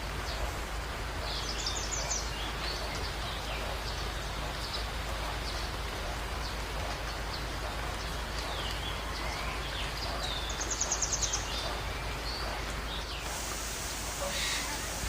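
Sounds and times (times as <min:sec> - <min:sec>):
steady background hiss: 0:00.0 - 0:15.0
small birds chirping and whistling: 0:08.0 - 0:13.5.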